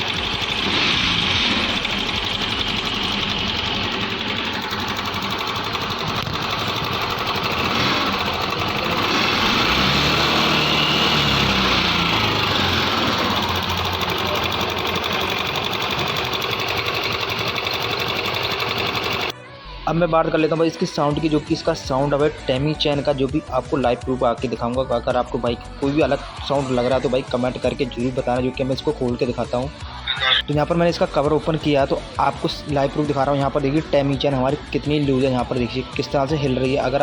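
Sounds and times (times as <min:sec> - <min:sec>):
scooter engine rattling: 0:00.0 - 0:19.4.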